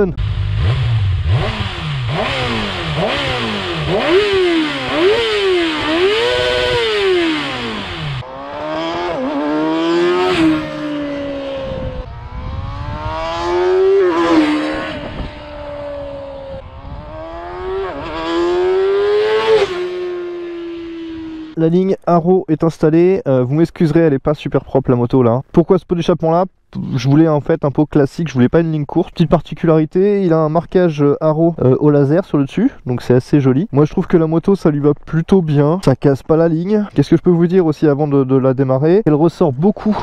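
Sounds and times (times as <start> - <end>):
motorcycle engine revving: 0.0 - 21.6
motorcycle passing by: 0.2 - 21.6.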